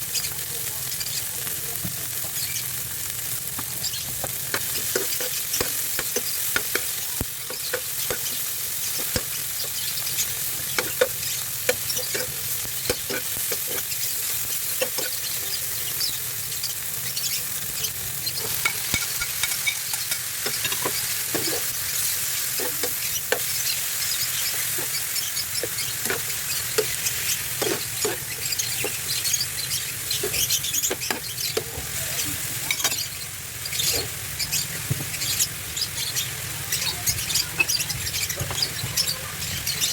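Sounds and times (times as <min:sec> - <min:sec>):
food sizzling in oil: 0:00.0 - 0:39.9
spatula scraping pan: 0:03.8 - 0:16.2, 0:18.2 - 0:34.2.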